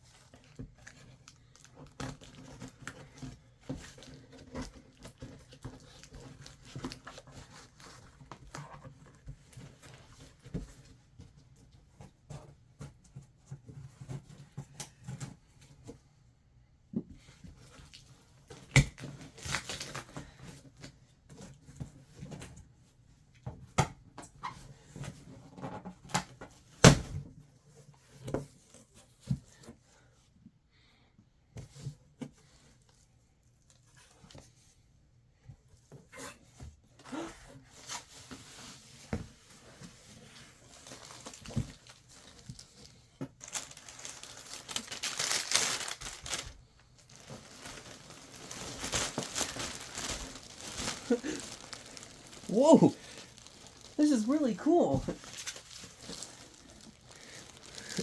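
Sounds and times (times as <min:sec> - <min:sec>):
packing material tearing and crinkling: 0:18.6 - 0:20.2, 0:40.6 - 0:58.0.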